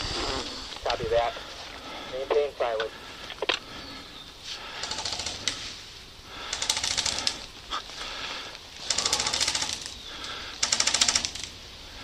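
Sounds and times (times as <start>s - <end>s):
airsoft rifles firing bursts: 4.7s - 5.7s, 6.4s - 7.5s, 8.8s - 11.6s.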